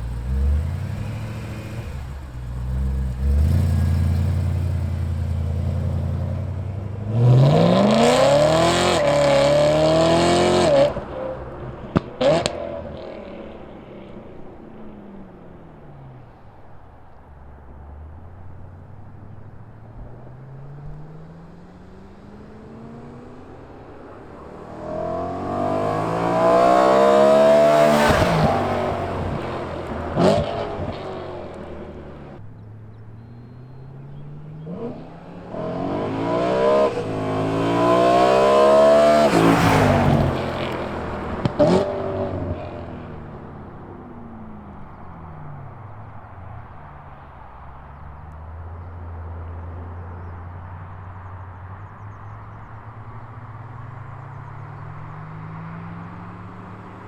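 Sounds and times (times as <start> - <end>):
exhaust cracks: 0.0 - 6.0
car engine accelerating past: 0.0 - 14.4, 19.8 - 32.4, 33.2 - 45.0.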